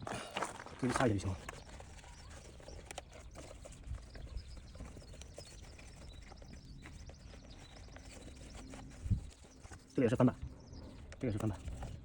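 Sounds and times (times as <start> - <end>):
rubbing and scraping by hand: 0.0 - 10.3.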